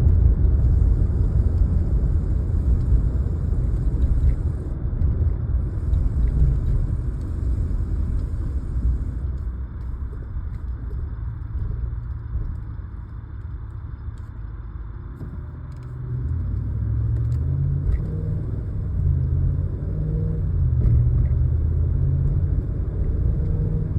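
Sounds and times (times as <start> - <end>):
pickup truck engine rumbling: 0.0 - 13.3.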